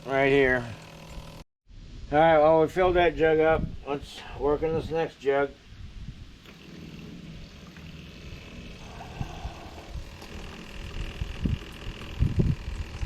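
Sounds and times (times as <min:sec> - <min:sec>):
fuel draining into a jug: 0:07.7 - 0:13.0.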